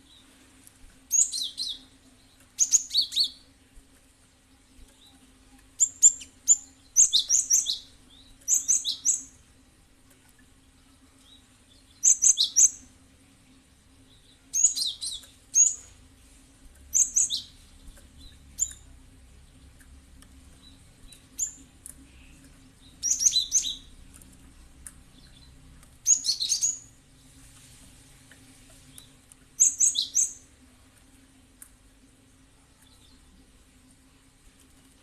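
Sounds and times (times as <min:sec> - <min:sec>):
bird sharp high chirps: 0:01.1 - 0:01.8, 0:02.6 - 0:03.4, 0:05.8 - 0:09.4, 0:12.0 - 0:12.9, 0:14.5 - 0:15.9, 0:16.9 - 0:17.6, 0:21.1 - 0:23.9, 0:25.2 - 0:26.9, 0:29.6 - 0:30.4.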